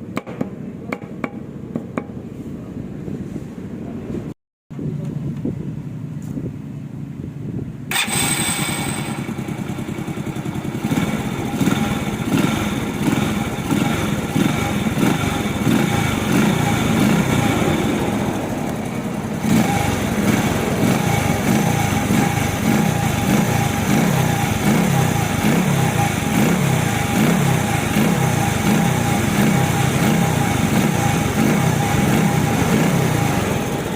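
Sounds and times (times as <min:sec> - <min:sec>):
small motorcycle engine running: 0:07.9 - 0:33.9.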